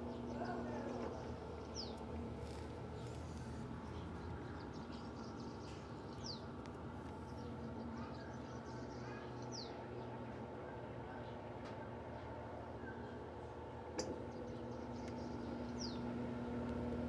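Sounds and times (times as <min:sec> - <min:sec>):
washing machine spinning: 0:15.5 - 0:17.0.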